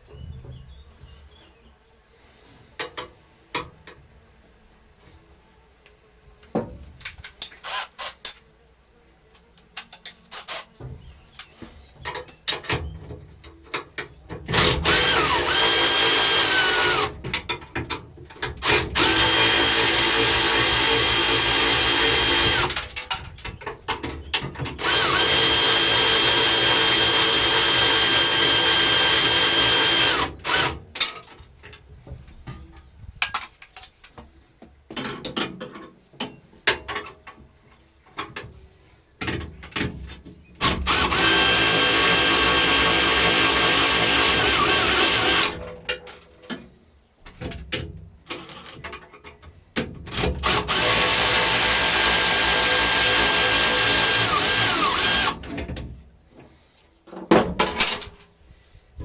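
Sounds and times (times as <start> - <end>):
clicks and knocks of hand work: 9.3 - 14.6, 30.0 - 38.6
power tool motor whine: 14.5 - 17.1, 18.6 - 22.8, 24.8 - 30.7, 40.6 - 45.6, 50.4 - 55.4.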